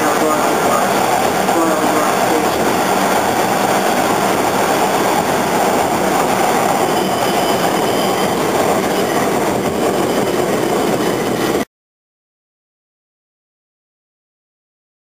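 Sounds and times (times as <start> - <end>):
subway wheels rumbling on rail: 0.0 - 11.7.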